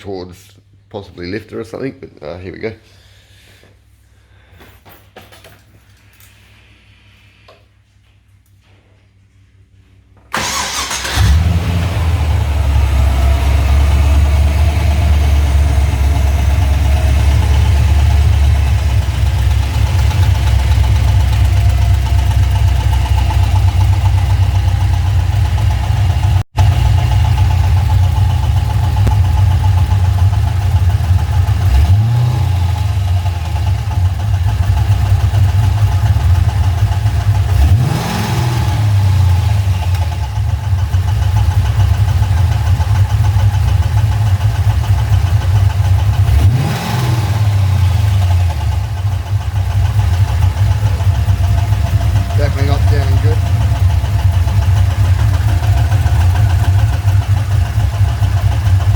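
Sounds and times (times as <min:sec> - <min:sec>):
car engine idling: 0:10.3 - 0:37.9, 0:38.9 - 0:58.9
engine revving: 0:10.4 - 0:58.9
engine knock: 0:14.1 - 0:32.2, 0:48.0 - 0:58.9.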